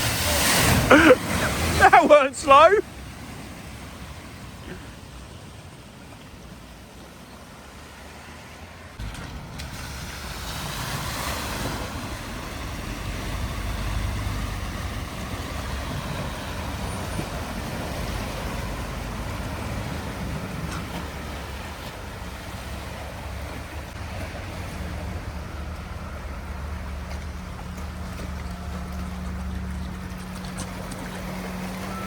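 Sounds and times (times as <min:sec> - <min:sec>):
water spray rushing: 0:00.0 - 0:04.3, 0:09.0 - 0:25.5
vehicle engine rumble: 0:00.0 - 0:32.0.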